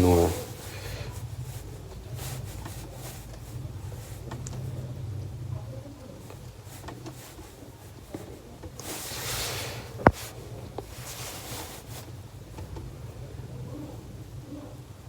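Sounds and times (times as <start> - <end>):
hands rustling: 0.0 - 4.7, 6.2 - 12.3.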